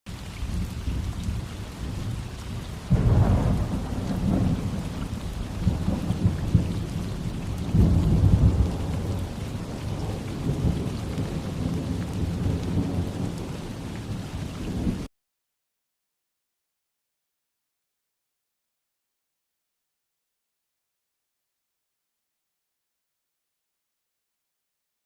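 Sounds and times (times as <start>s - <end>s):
steady rain falling: 0.1s - 15.1s
deep thunder rumbles: 0.3s - 15.1s.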